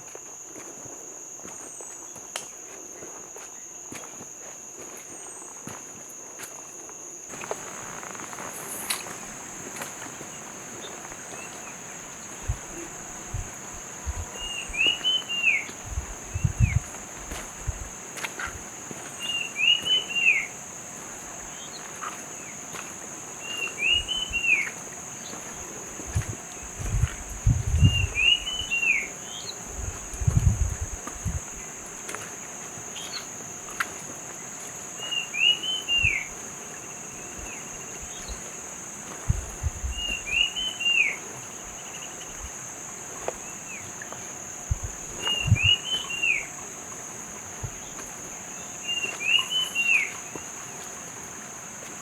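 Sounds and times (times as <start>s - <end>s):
stream rushing: 7.3s - 21.3s
high-pitched insect drone: 7.3s - 32.2s.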